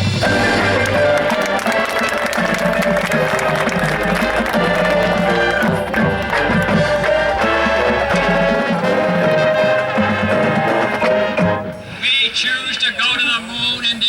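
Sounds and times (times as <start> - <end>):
percussion: 0.0 - 11.8
marching band brass chords: 0.0 - 12.0
deep bass: 2.6 - 10.8.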